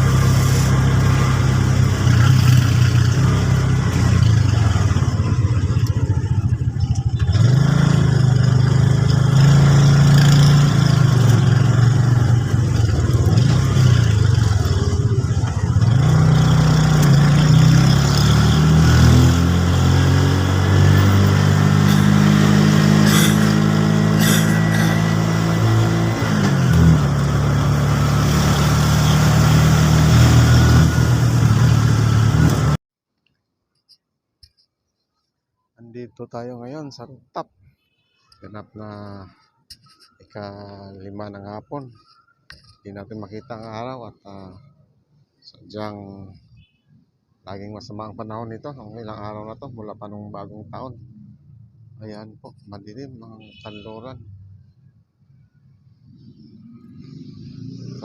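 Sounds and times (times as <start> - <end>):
vehicle engine driving: 0.0 - 32.8.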